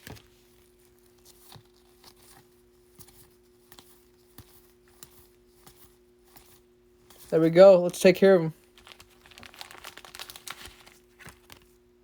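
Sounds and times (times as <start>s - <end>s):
trading cards rustling and clicking: 0.0s - 11.9s
faint steady hum: 0.0s - 12.0s.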